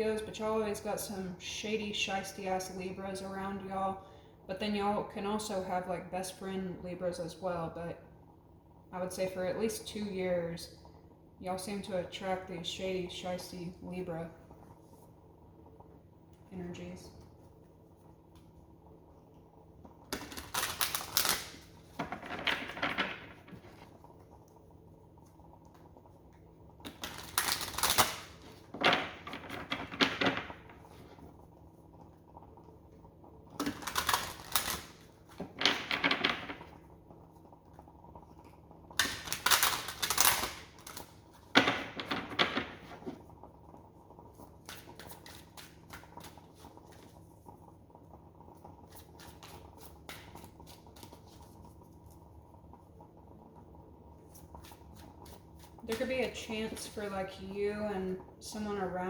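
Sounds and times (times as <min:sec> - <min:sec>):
cards being shuffled: 0:20.2 - 0:22.8, 0:26.9 - 0:29.0, 0:33.6 - 0:35.1, 0:44.6 - 0:47.1.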